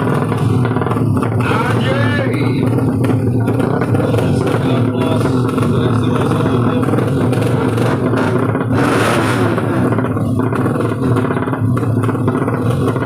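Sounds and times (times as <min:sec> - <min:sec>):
motorcycle engines revving: 0:00.0 - 0:13.0.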